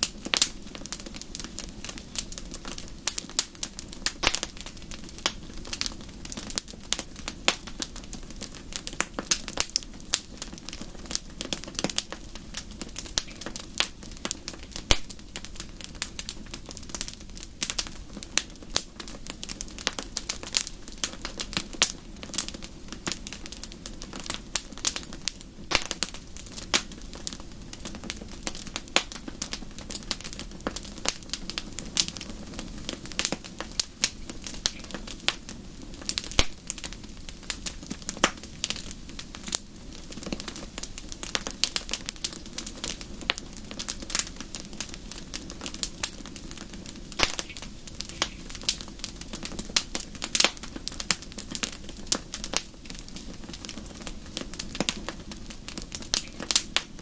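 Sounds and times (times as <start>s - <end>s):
fire crackling in fireplace: 0.0s - 57.0s.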